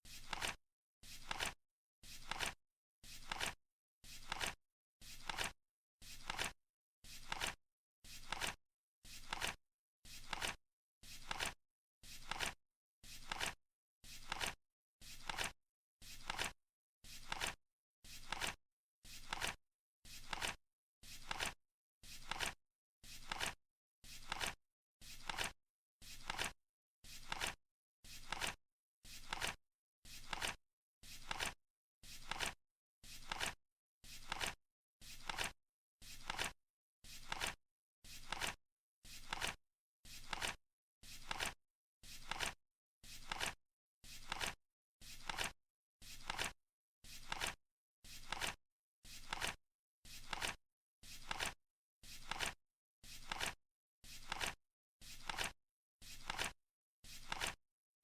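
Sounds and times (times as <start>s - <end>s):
flip card flapping: 0.1s - 3.6s, 4.2s - 5.5s, 6.1s - 6.5s, 7.2s - 7.6s, 8.2s - 8.6s, 9.2s - 9.6s, 10.2s - 10.6s, 11.2s - 11.6s, 12.2s - 12.6s, 13.2s - 13.6s, 14.2s - 14.6s, 15.2s - 15.5s, 16.1s - 16.6s, 17.2s - 17.6s, 18.2s - 18.6s, 19.2s - 19.6s, 20.2s - 20.6s, 21.2s - 21.6s, 22.2s - 22.6s, 23.2s - 23.6s, 24.2s - 24.6s, 25.2s - 25.5s, 26.1s - 26.6s, 27.2s - 27.6s, 28.2s - 28.6s, 29.2s - 29.6s, 30.2s - 30.6s, 31.2s - 31.6s, 32.2s - 32.6s, 33.2s - 33.6s, 34.2s - 34.6s, 35.2s - 35.5s, 36.2s - 36.6s, 37.2s - 37.6s, 38.2s - 38.6s, 39.2s - 39.6s, 40.2s - 40.6s, 41.2s - 41.6s, 42.2s - 42.6s, 43.2s - 43.6s, 44.2s - 44.6s, 45.2s - 45.5s, 46.2s - 46.5s, 47.2s - 47.6s, 48.2s - 48.6s, 49.2s - 49.6s, 50.2s - 50.6s, 51.2s - 51.6s, 52.2s - 52.6s, 53.2s - 53.6s, 54.2s - 54.6s, 55.2s - 55.5s, 56.2s - 56.6s, 57.2s - 57.6s.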